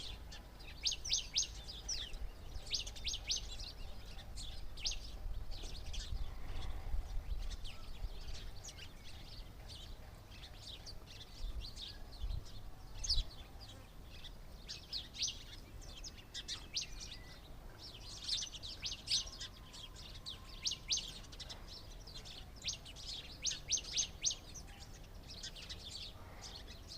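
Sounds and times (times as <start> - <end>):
small birds chirping: 0.0 - 26.9.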